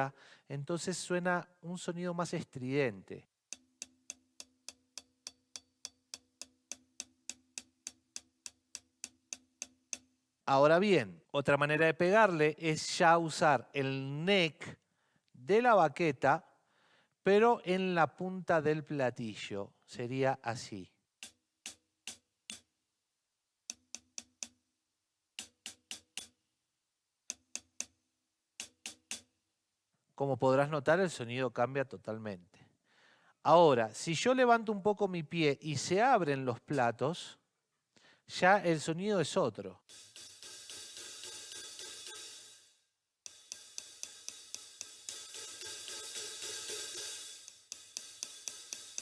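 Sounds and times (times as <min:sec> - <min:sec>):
drumstick on closed hi-hat: 0:03.5 - 0:10.3, 0:21.2 - 0:22.8, 0:23.7 - 0:24.6, 0:25.4 - 0:26.4, 0:27.3 - 0:28.0, 0:28.6 - 0:29.4, 0:39.8 - 0:49.0.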